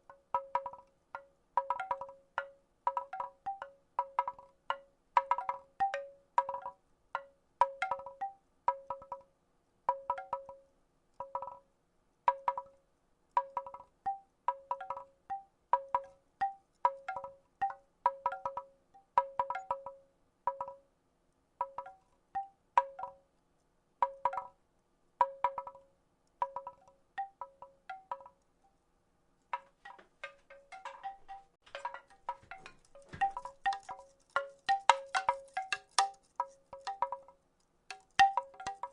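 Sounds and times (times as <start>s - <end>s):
wooden rattle clacking: 29.5s - 38.9s.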